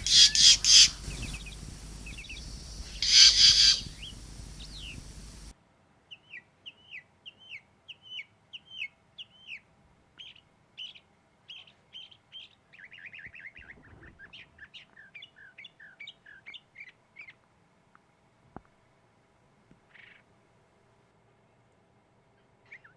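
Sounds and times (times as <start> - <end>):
birds chirping: 0.0 - 5.5.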